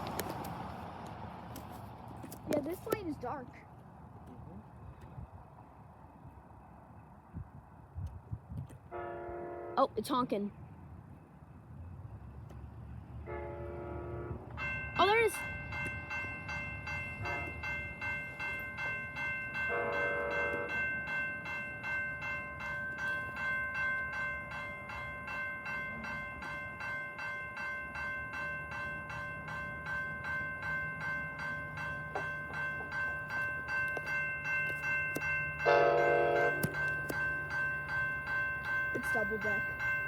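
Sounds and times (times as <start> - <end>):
train rumble: 0.0 - 40.0
train horn blasts: 8.9 - 9.9, 13.2 - 14.6, 17.2 - 17.7, 19.7 - 20.8, 35.6 - 36.8
level-crossing bell ringing: 14.6 - 40.0.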